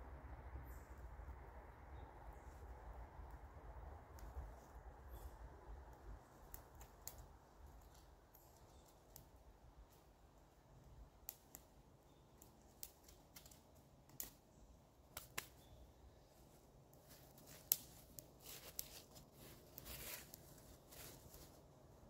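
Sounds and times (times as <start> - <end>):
campfire crackling: 2.4 - 22.0
fire pops: 15.1 - 15.6.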